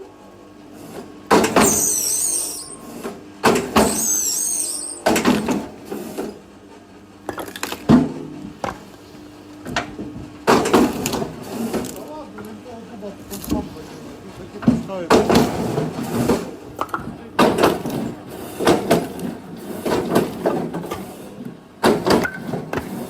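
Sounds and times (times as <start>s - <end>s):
squealing of tearing fibres: 1.6s - 2.8s, 3.9s - 5.1s.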